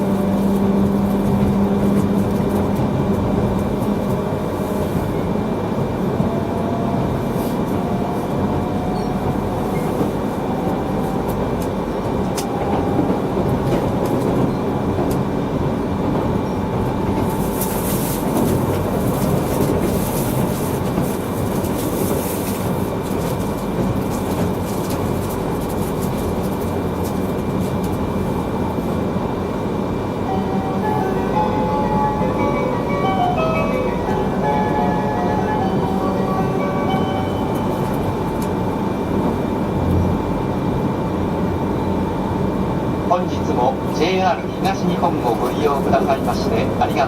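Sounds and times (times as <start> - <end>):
train rumble from inside: 0.0 - 47.0
train whine rising in pitch: 30.2 - 39.2.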